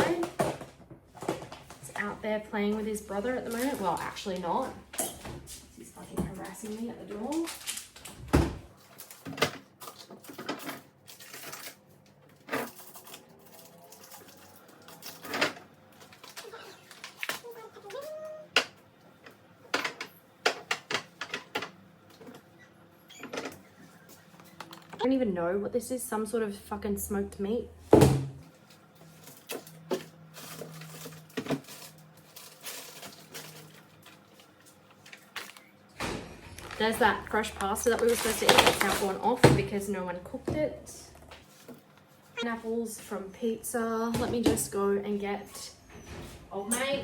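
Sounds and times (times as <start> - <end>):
packaging rustling: 30.3 - 35.7, 36.5 - 39.4.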